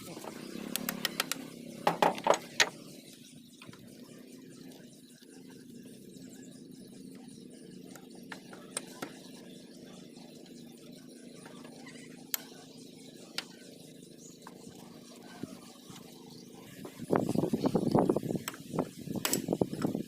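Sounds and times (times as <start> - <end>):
steady low hum: 0.0 - 20.0
sharp metallic clicks: 0.6 - 1.5.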